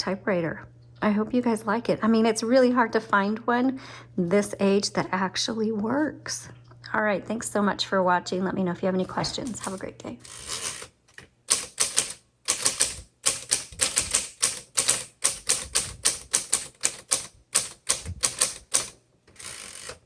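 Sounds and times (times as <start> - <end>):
typewriter key strikes: 11.5 - 20.0.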